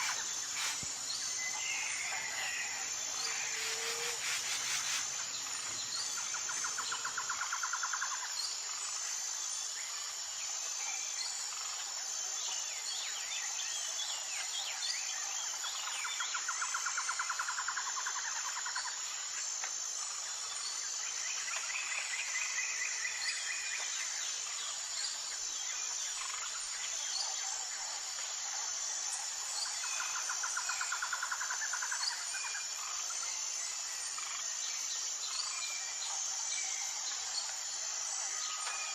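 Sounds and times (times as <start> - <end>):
birds chirping and trilling: 0.0 - 7.2.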